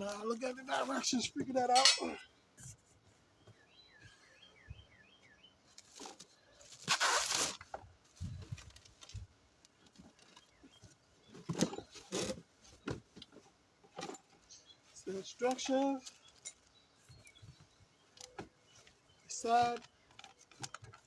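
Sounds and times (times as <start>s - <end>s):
bird chirping: 3.3s - 7.1s, 14.4s - 21.0s
packing rustling: 5.8s - 9.2s.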